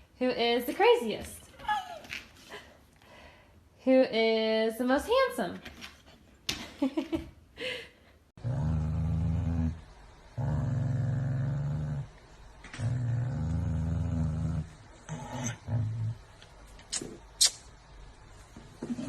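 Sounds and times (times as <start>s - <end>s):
dog growling: 8.4s - 16.4s.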